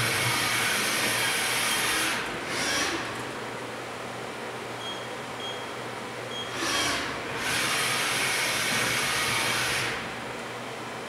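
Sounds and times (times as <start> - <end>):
machine humming: 0.0 - 3.6.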